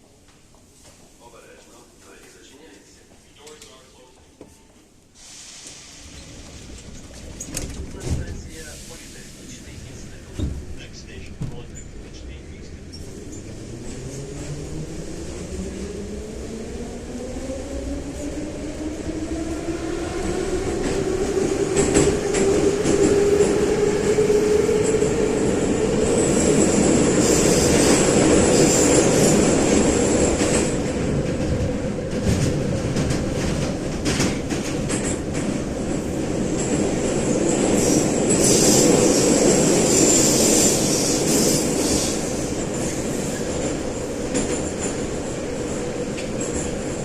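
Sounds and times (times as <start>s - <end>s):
wheel rumble and rail clicks: 30.3s - 37.0s.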